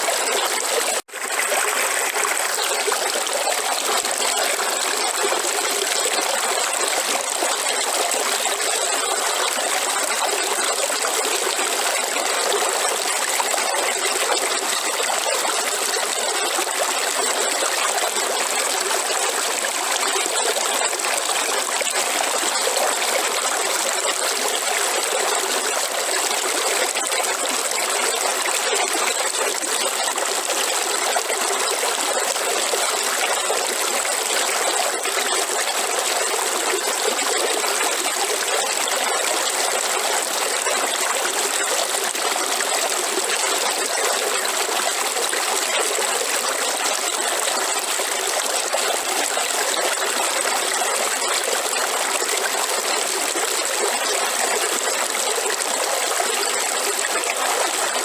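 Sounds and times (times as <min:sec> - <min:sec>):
river water flowing: 0:00.0 - 0:15.0.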